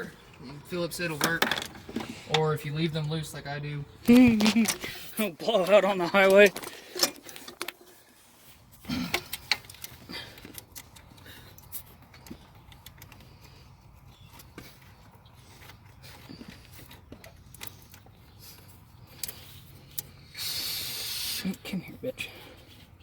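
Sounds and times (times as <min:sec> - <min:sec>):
hand tools clicking and clinking: 0:08.8 - 0:20.8.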